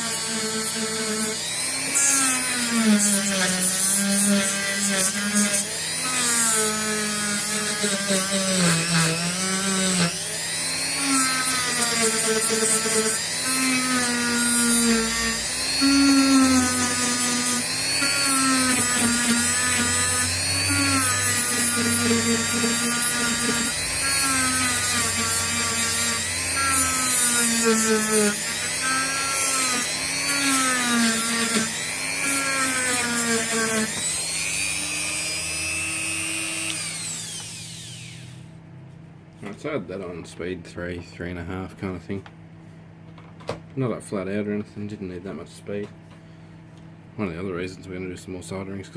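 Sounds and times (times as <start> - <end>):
rotary tool motor whine: 0.0 - 38.5.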